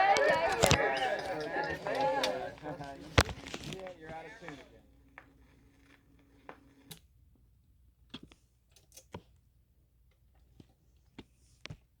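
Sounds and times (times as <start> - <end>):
vinyl record clicks and pops: 0.0 - 4.6.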